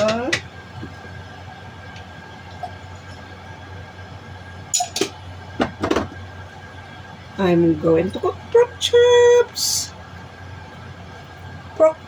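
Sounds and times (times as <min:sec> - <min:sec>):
steady low hum: 0:00.0 - 0:12.0
kitchenware clinking: 0:04.8 - 0:06.1.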